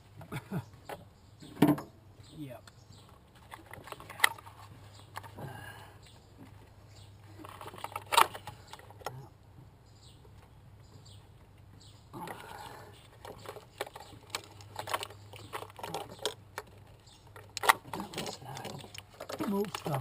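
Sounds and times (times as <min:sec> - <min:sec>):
tools clicking and rattling on engine parts: 0:06.4 - 0:09.2, 0:10.3 - 0:20.0.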